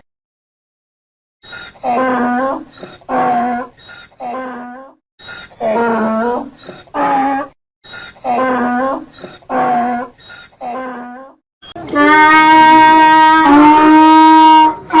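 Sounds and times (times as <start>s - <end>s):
donkey braying: 1.8s - 15.0s.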